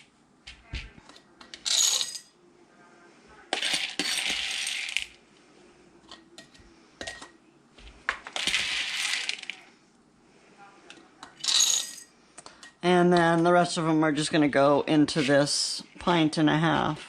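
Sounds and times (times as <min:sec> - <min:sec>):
dry beans pouring into glass jars: 0:03.6 - 0:05.2, 0:08.4 - 0:09.6.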